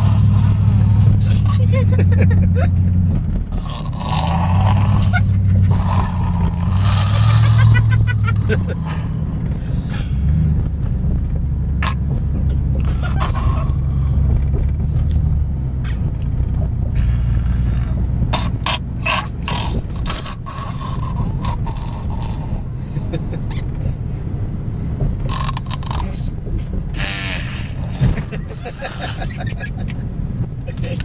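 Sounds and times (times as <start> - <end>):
child snoring: 0.0 - 1.7, 3.6 - 9.1, 17.0 - 23.2, 27.0 - 28.1
car road rumble: 0.0 - 31.0.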